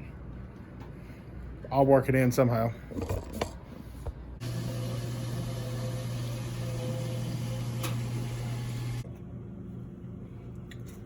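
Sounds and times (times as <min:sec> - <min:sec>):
machine electrical hum and hiss: 0:03.5 - 0:11.0.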